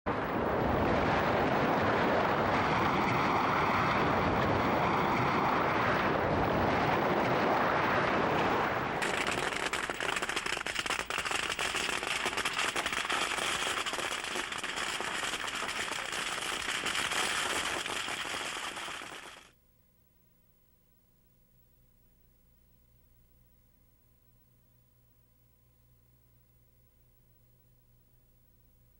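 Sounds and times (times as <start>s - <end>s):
steady rushing noise: 0.1s - 19.5s
firecrackers crackling: 8.3s - 19.5s.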